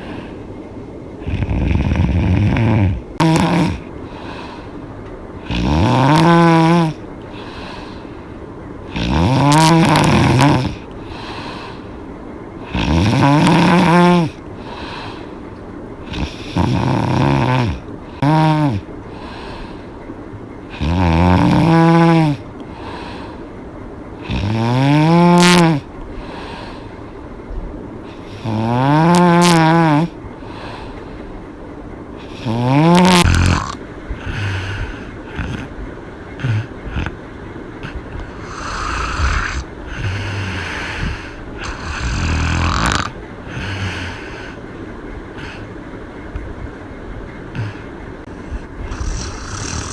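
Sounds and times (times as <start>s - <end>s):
quiet breaths: 0.0s - 46.4s, 47.2s - 49.9s
woman snoring loudly: 1.2s - 3.9s, 5.4s - 7.0s, 8.9s - 10.8s, 12.6s - 14.4s, 16.1s - 18.9s, 20.7s - 22.4s, 24.2s - 25.9s, 28.4s - 30.2s, 32.2s - 35.7s, 36.4s - 37.1s, 37.8s - 44.5s, 48.8s - 49.9s.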